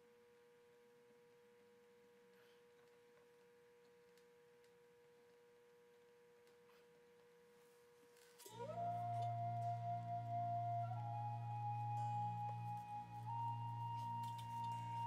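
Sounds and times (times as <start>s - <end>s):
faint steady hum: 0.0s - 15.0s
music: 8.1s - 15.0s.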